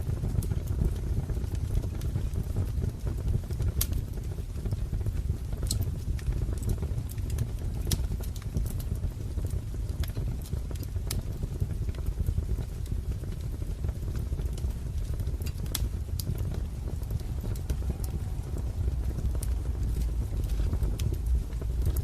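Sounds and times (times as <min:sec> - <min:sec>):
wood fire crackling: 0:00.0 - 0:22.0.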